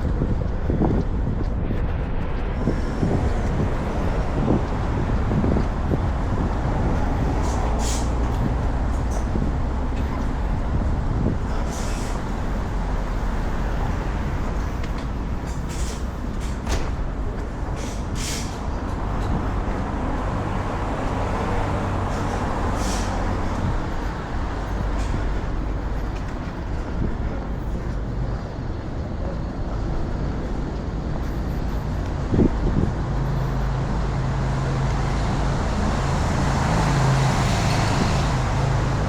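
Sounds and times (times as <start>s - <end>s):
low rumble of passing vehicles: 0.0s - 39.0s.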